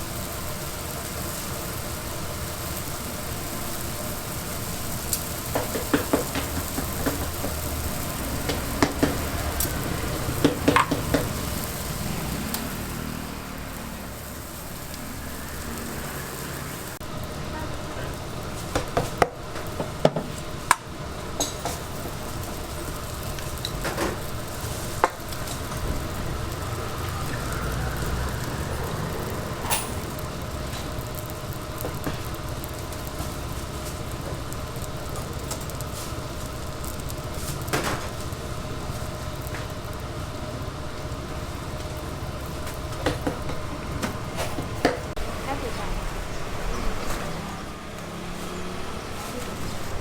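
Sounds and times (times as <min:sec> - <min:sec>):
dough sizzling in hot oil: 0:00.0 - 0:50.0.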